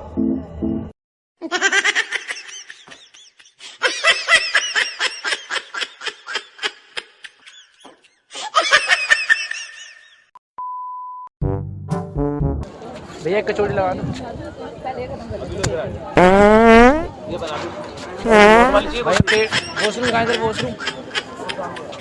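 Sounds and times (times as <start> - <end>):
high-pitched laughter: 1.4 - 7.4.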